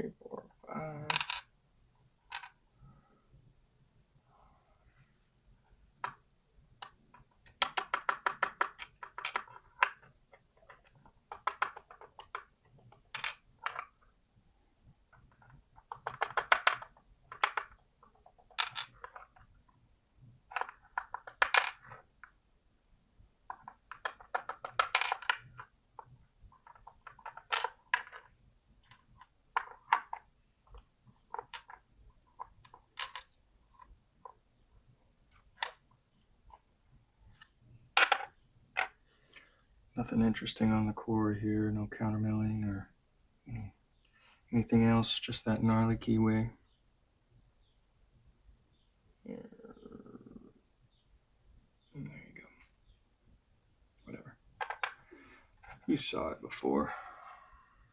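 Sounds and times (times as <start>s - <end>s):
metal lock parts clicking and rattling: 6.8s - 14.0s.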